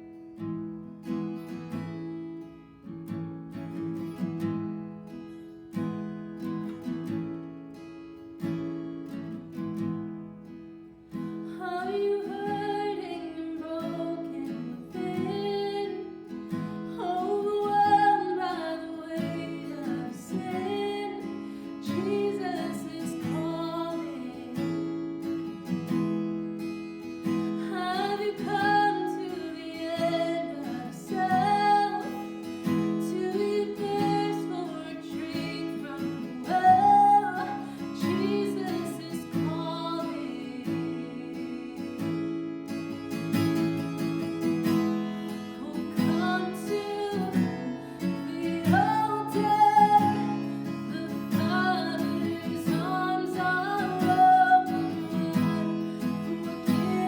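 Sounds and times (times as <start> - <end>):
acoustic guitar strumming: 13.9 - 57.0
person singing: 17.0 - 24.6, 27.7 - 32.4, 33.0 - 42.1, 45.6 - 57.0.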